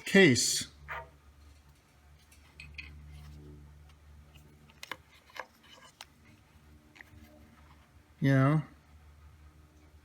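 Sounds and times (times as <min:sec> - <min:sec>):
small metal parts clinking: 0:01.5 - 0:03.0.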